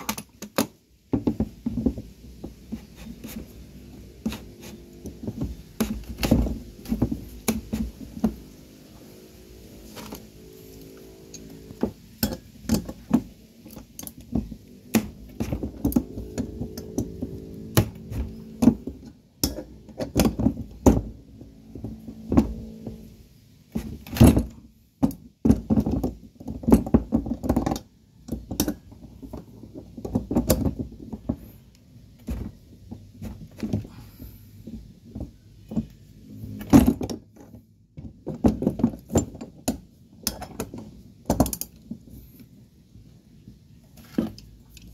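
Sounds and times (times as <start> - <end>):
metallic clanks of hand tools: 19.4 - 20.4, 39.1 - 41.8.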